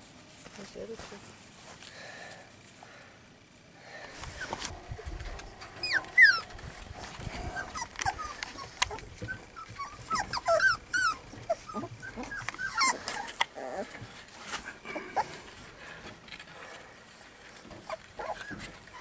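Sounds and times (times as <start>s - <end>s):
puppies whining and yelping: 4.3s - 15.8s, 16.5s - 19.0s.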